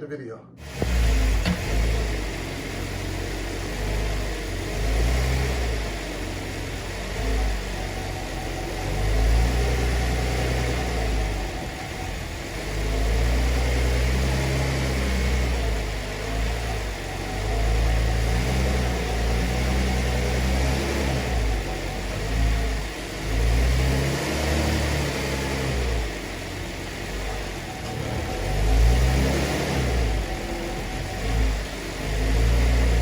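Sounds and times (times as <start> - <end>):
car engine idling and revving: 0.6 - 33.0.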